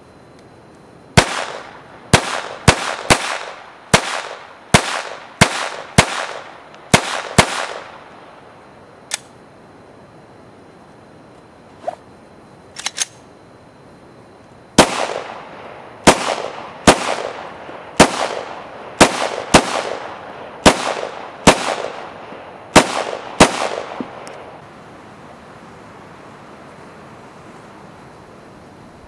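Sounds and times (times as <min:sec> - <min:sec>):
pistol shots with echo: 0:01.2 - 0:08.0, 0:14.8 - 0:24.2.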